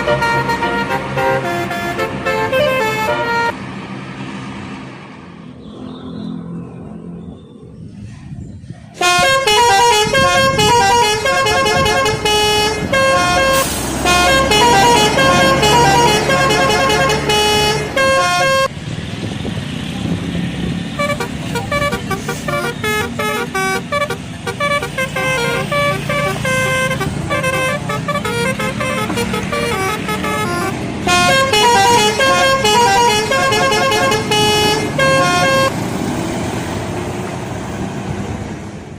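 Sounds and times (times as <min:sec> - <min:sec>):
multi-tone bus horns playing tunes: 0:00.0 - 0:03.6, 0:09.0 - 0:18.7, 0:20.9 - 0:35.8
low engine noise: 0:00.0 - 0:38.9
street noise: 0:00.0 - 0:38.9.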